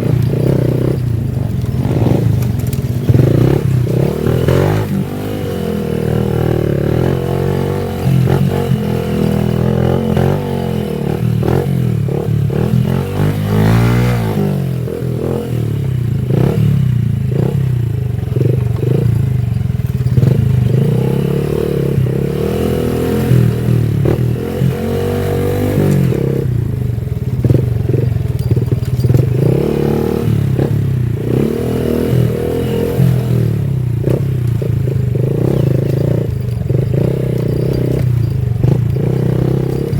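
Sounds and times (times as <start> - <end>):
motorcycle engine running: 0.0 - 39.9
motorcycle rattles and knocks: 0.0 - 39.9.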